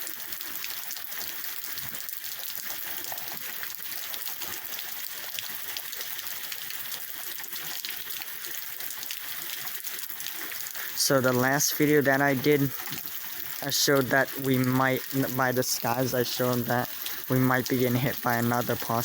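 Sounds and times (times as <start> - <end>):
heavy rain pouring: 10.6 - 19.0.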